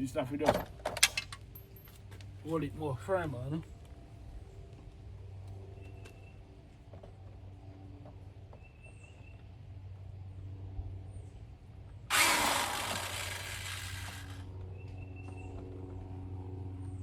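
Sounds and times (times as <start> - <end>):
electric drill driving a screw: 12.1 - 14.5.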